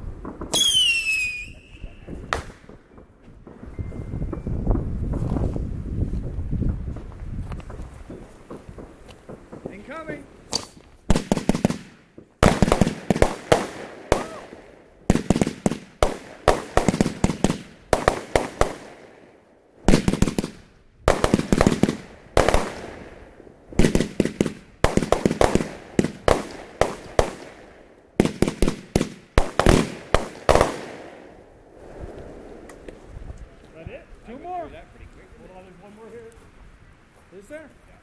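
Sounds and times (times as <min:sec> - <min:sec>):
fireworks bangs with echo: 0:00.0 - 0:05.2, 0:07.7 - 0:33.0.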